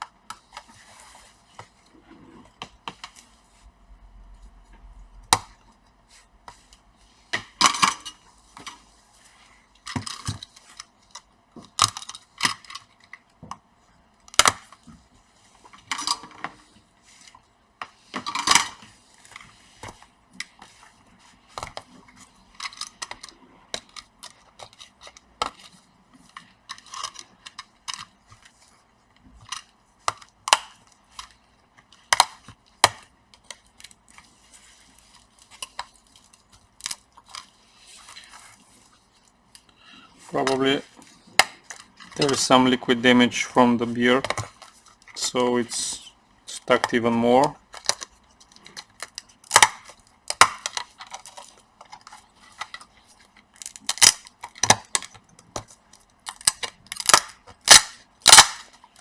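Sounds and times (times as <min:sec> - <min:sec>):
plastic cracking and clicking: 0:47.6 - 0:59.0.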